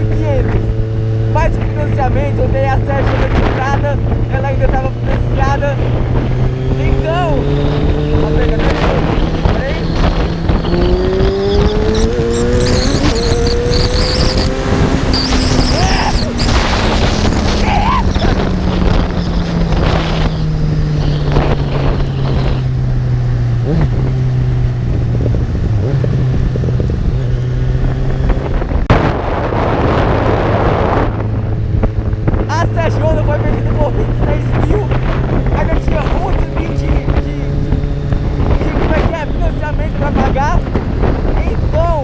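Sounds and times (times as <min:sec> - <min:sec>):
motorcycle engine accelerating: 0:00.0 - 0:42.0
wind rushing on microphone: 0:00.0 - 0:42.0
loud rush of noise: 0:07.2 - 0:20.2.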